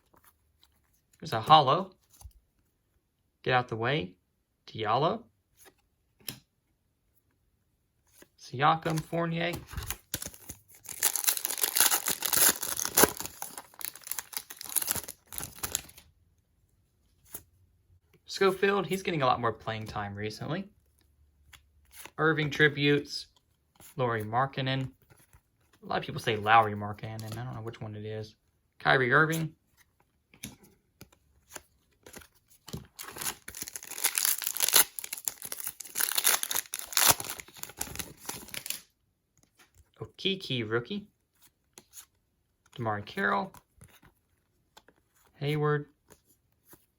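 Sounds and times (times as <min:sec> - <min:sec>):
cards clicking and rustling: 0:08.2 - 0:16.0, 0:30.3 - 0:38.8
plastic wrapper crinkling: 0:09.7 - 0:16.0, 0:32.7 - 0:38.8.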